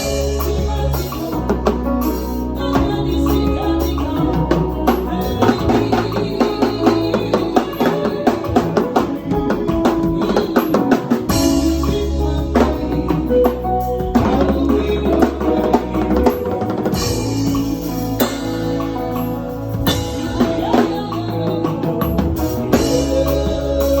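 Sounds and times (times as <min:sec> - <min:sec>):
drum kit playing busy groove: 0:00.0 - 0:24.0
music with bass line: 0:00.0 - 0:24.0.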